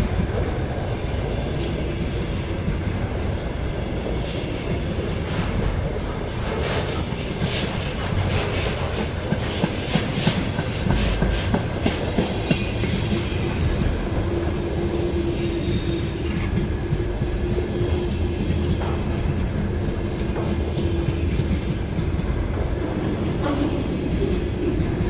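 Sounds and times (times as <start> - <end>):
train cars rumbling past: 0.0 - 25.0
wheels clacking over rail joints: 0.0 - 25.0.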